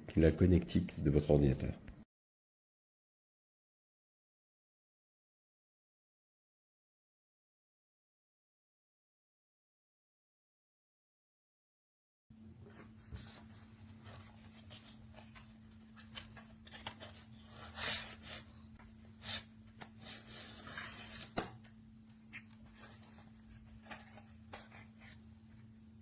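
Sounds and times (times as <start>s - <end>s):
low electrical hum: 12.3s - 26.0s.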